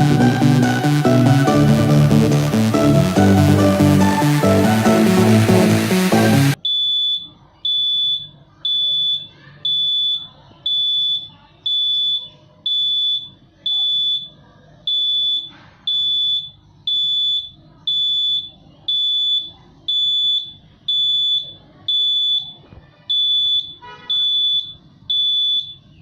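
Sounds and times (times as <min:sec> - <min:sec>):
alarm clock buzzer beeping: 0:00.0 - 0:10.2.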